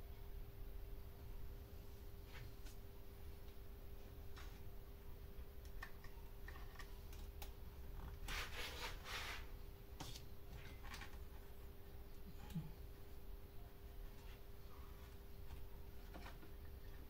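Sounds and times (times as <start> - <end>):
faint steady hum: 0.0 - 17.0
rubbing scraping sound: 8.2 - 10.2.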